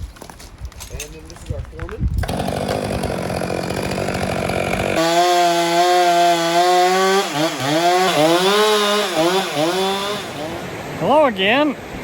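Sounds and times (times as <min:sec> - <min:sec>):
chainsaw running: 0:02.2 - 0:10.6.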